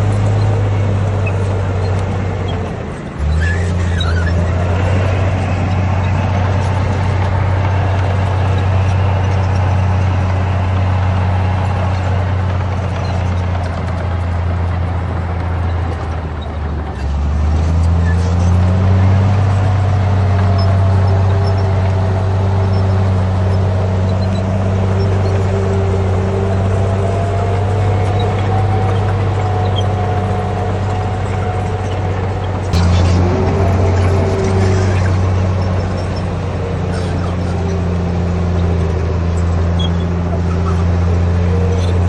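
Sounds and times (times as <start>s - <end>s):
bulldozer diesel engine running: 0.0s - 42.0s
wavering whine: 24.0s - 37.8s.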